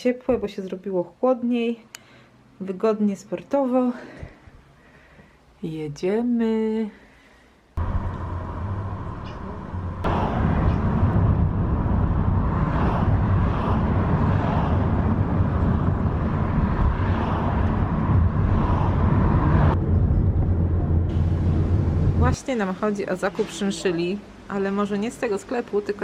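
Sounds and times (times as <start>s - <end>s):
car engine and road noise: 7.8s - 22.4s.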